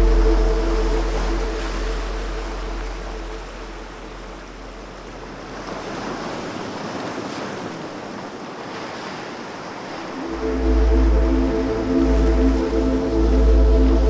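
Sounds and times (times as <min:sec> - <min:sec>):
deep low rumble: 0:00.0 - 0:05.6, 0:10.2 - 0:14.0
ocean surf washing onto beach: 0:00.0 - 0:14.0.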